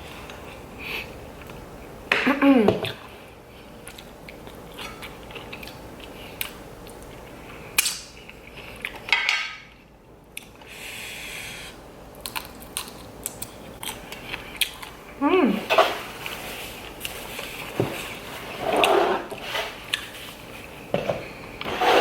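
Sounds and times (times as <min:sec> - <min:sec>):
biting and chewing: 0:12.2 - 0:15.0.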